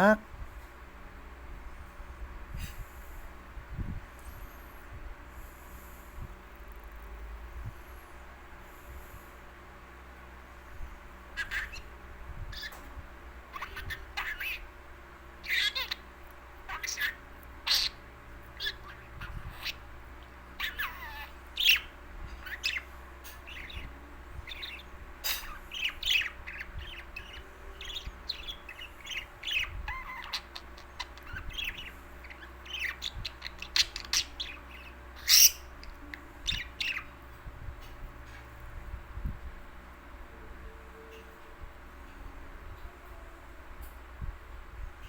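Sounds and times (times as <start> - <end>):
bird chirping and calling: 11.3 - 12.9, 13.5 - 14.8, 15.4 - 19.9, 20.5 - 37.2.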